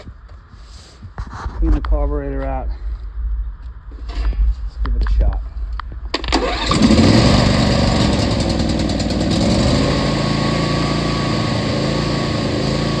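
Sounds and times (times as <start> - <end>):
lawn tractor engine running: 6.1 - 13.0.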